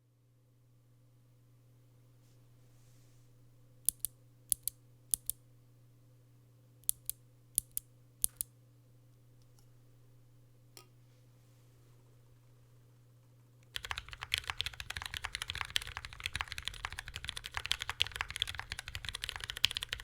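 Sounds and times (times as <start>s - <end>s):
mechanical keyboard keystrokes: 3.9s - 5.4s, 6.8s - 8.4s, 13.8s - 20.0s.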